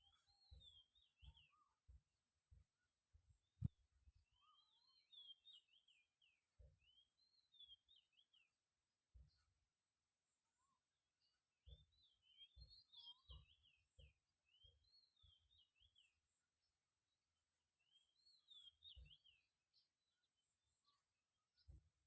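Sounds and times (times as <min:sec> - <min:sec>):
songbird singing: 0:00.0 - 0:22.0.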